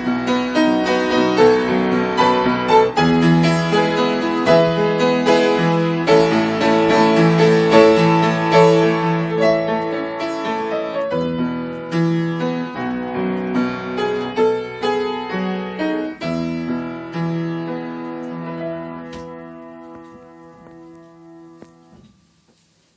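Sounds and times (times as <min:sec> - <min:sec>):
slow solo piano: 0:00.0 - 0:22.9.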